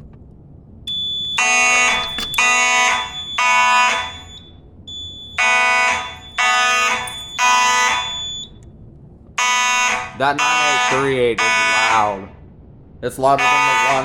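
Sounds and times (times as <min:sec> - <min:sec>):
fire alarm horn blasts: 0:00.9 - 0:08.6, 0:09.4 - 0:12.2, 0:13.3 - 0:14.0.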